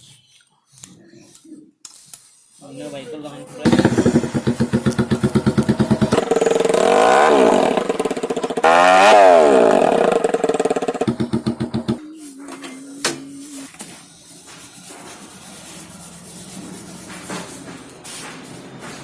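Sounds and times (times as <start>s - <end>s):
motorcycle engine revving: 3.6s - 12.0s.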